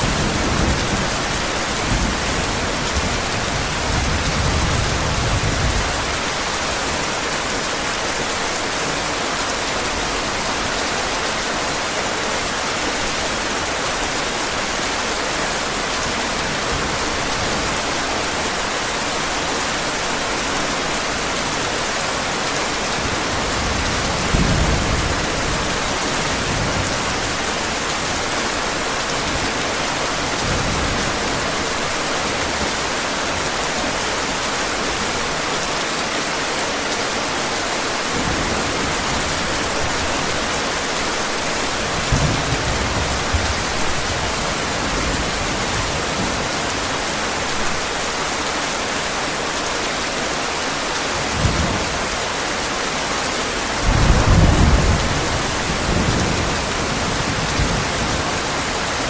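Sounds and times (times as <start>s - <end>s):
heavy rain: 0.0s - 59.0s
thunder rolling: 53.8s - 58.1s.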